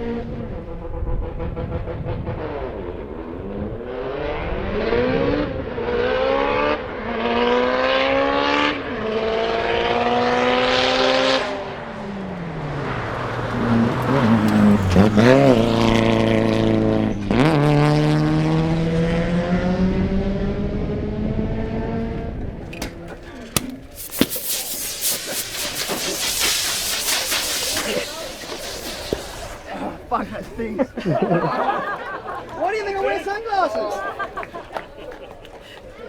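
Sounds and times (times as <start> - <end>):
car engine accelerating hard: 0.0 - 22.6
engine rev blips: 12.8 - 21.4.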